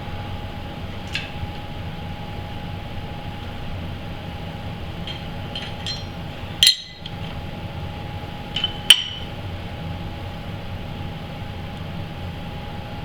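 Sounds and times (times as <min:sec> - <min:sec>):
steady machine hum: 0:00.0 - 0:13.0
metallic clinks of steel parts: 0:01.0 - 0:01.4, 0:05.0 - 0:07.4, 0:08.5 - 0:09.4.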